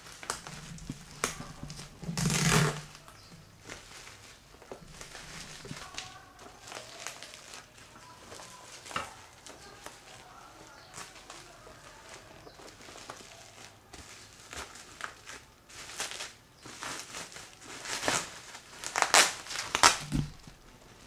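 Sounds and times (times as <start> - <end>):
plastic packaging crinkling: 0.0 - 21.0
plastic ripping: 0.0 - 21.0.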